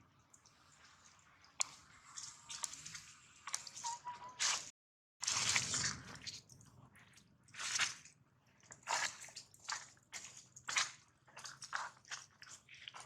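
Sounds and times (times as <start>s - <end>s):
monkey chewing wet fruit: 8.6s - 13.0s.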